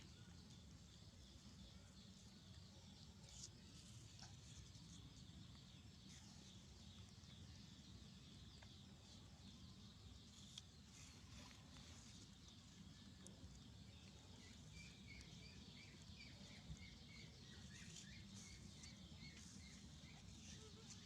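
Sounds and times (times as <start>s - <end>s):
faint outdoor ambience: 0.0s - 21.0s
bird chirping: 4.1s - 21.0s.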